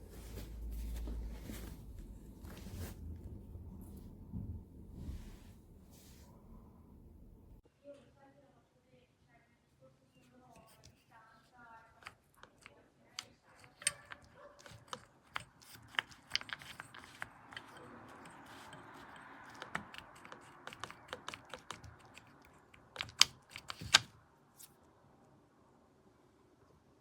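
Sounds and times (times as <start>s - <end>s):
hard plastic objects clicking: 12.0s - 24.1s.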